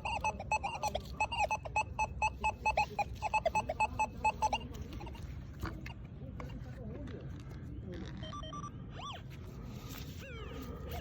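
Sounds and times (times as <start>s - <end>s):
metal detector beeping: 0.0s - 6.0s.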